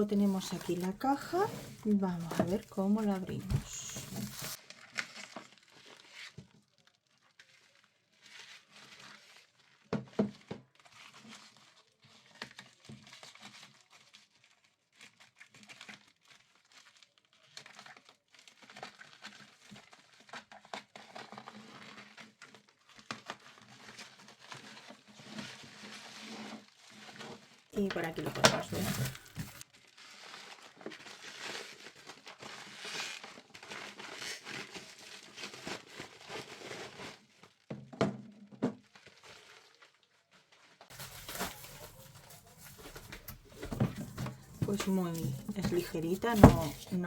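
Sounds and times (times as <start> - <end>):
packaging crinkling: 0.0 - 6.3, 27.8 - 37.2, 40.9 - 47.0.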